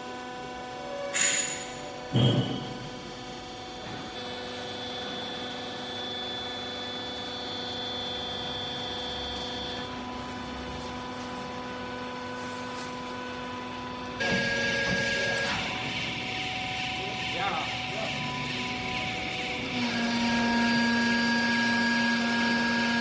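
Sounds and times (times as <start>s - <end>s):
hydraulic baler motor humming: 13.3s - 23.0s.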